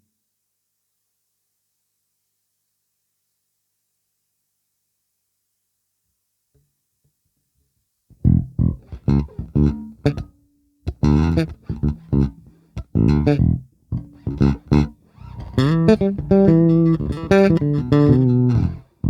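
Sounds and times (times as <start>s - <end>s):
plucked guitar notes: 8.2s - 10.3s, 10.9s - 19.0s.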